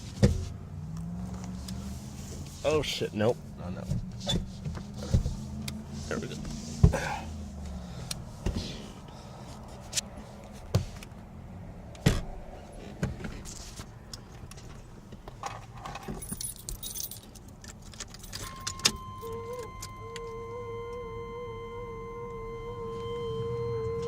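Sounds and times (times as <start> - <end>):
keys jangling: 15.8 - 19.7.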